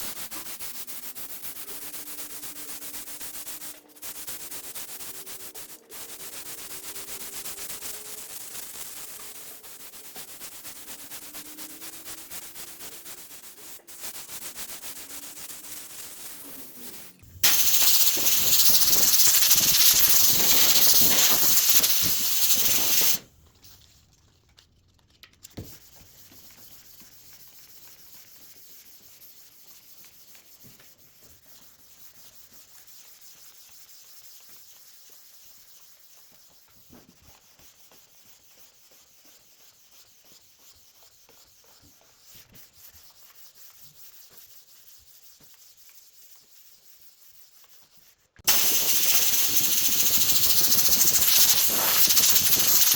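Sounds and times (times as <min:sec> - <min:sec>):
faint hiss: 0:00.0 - 0:23.2, 0:48.5 - 0:52.9
sanding wood: 0:00.0 - 0:23.2, 0:25.8 - 0:52.9.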